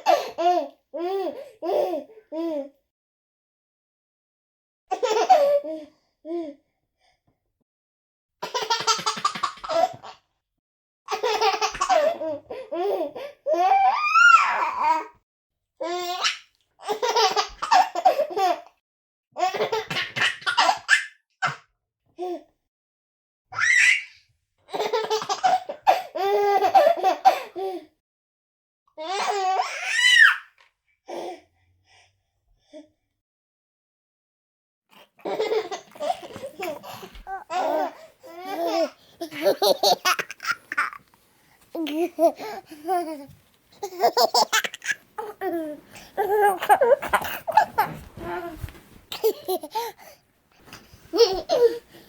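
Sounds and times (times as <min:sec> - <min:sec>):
baby laughing: 0:08.4 - 0:10.1, 0:35.2 - 0:41.0, 0:41.7 - 0:50.2, 0:51.0 - 0:51.8.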